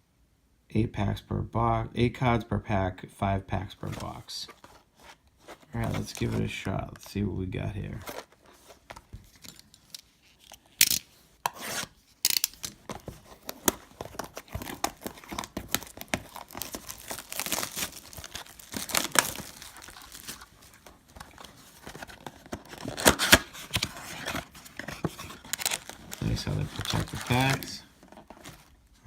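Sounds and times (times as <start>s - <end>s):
packaging crinkling: 12.3s - 28.8s
cardboard box tearing: 12.9s - 20.5s, 21.2s - 28.7s.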